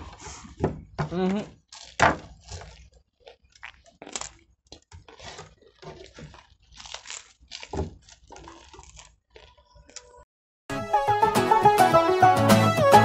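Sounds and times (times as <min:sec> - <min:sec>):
people chewing pastry: 0:00.0 - 0:10.2.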